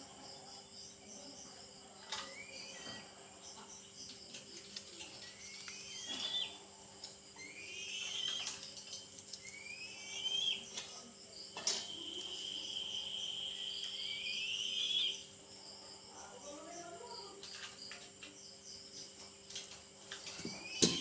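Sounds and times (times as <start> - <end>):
young eagle whistled begging calls: 12.4 - 15.2.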